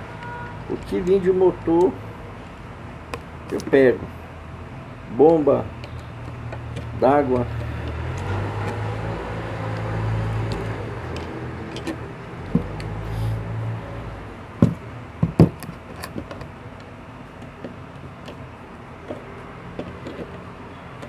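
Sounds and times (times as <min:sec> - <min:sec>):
sharp clicks and knocks: 0:01.8 - 0:03.9, 0:05.2 - 0:13.1, 0:14.5 - 0:21.0.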